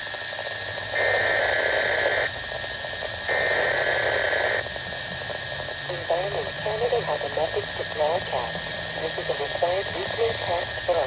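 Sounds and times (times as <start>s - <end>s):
radio hiss: 0.0s - 11.0s.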